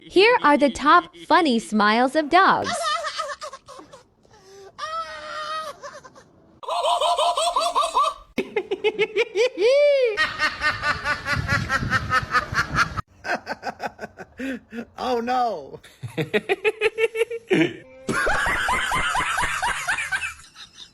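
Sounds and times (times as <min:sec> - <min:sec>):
people laughing: 0:02.6 - 0:04.1, 0:16.0 - 0:20.9.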